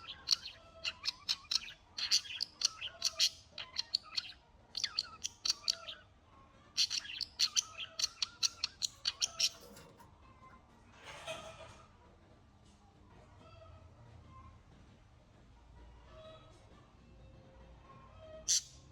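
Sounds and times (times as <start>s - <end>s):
bird chirping rapidly: 0.0s - 6.0s, 6.8s - 9.8s.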